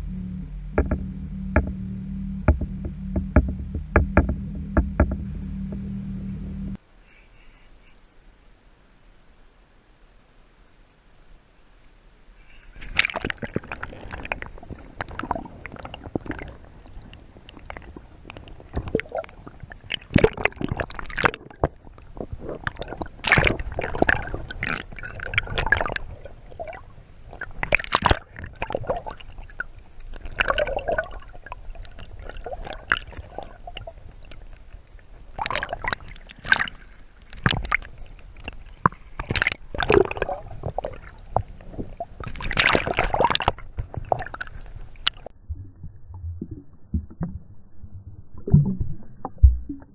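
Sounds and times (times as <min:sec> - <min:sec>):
water splashing around kayak: 0:12.4 - 0:45.4.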